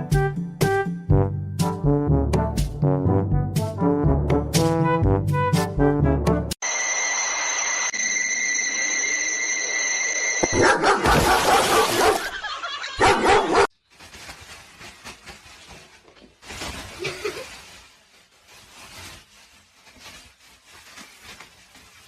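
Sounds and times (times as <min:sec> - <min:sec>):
dog barking: 0:10.5 - 0:13.7.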